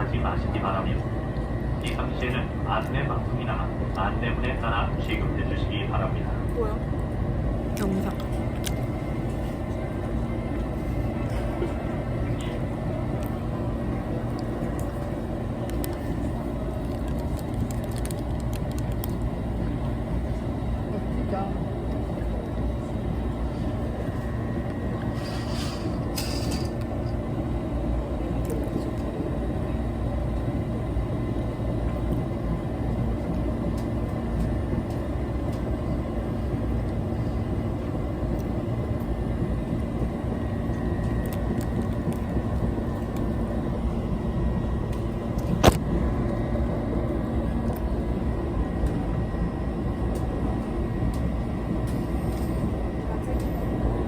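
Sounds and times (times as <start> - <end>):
passenger train rumbling: 0.0 - 54.0.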